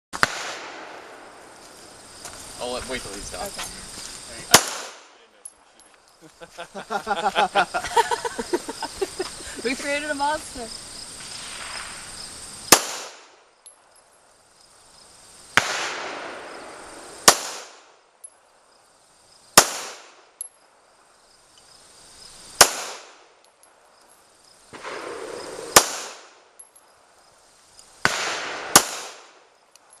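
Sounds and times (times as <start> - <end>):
handgun shots echoing: 4.5 - 5.1, 28.0 - 29.4.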